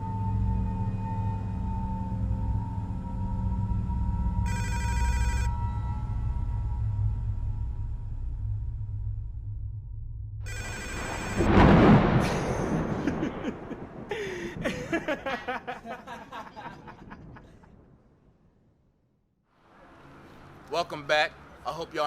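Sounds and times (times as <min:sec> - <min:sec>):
high pulsing tone: 0:00.1 - 0:07.8.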